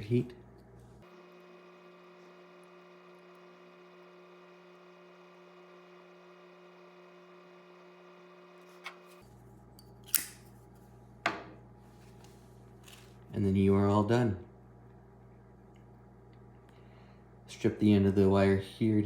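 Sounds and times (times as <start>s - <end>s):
heat gun running: 1.0s - 9.2s.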